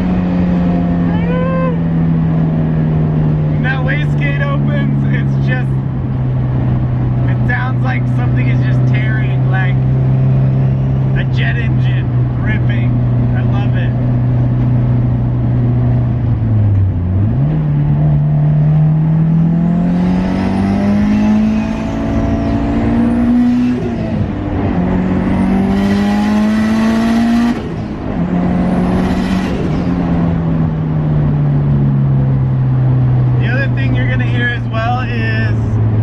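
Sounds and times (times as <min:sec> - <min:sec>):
turbocharged car engine accelerating: 0:00.0 - 0:36.0.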